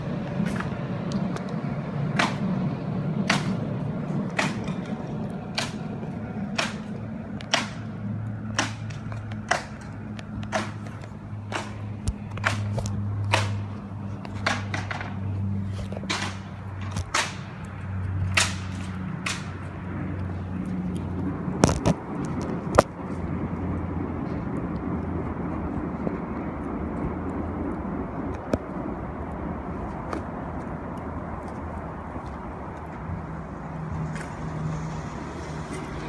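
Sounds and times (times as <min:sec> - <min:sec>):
bamboo crackling and popping in fire: 0:00.2 - 0:22.9.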